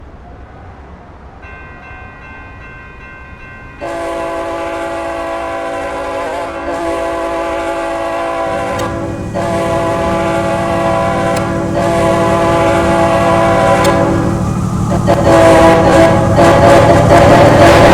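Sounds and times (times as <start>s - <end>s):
low rumble of train: 0.0s - 17.9s
train air horn blasts: 3.8s - 17.9s.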